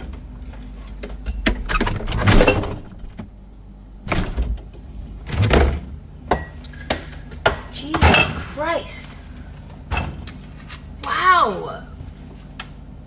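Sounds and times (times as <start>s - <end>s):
refrigerator door knocks and rustling: 4.1s - 4.7s.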